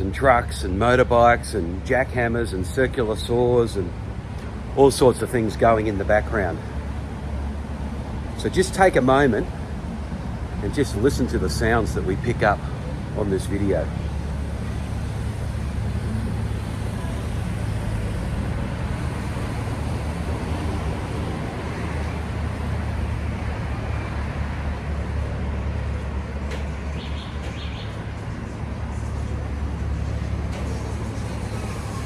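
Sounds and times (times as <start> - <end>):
passing motor vehicles rumbling: 0.0 - 32.0.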